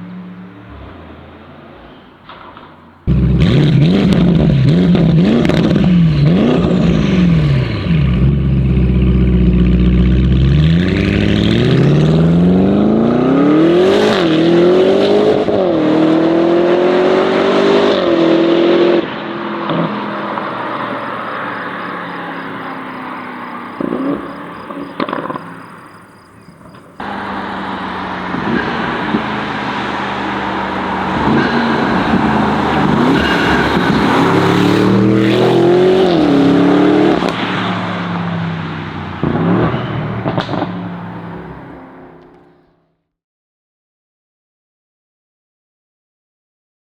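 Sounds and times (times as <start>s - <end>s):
car engine revving: 0.0s - 42.5s
exhaust cracks: 0.5s - 12.4s, 19.0s - 42.5s.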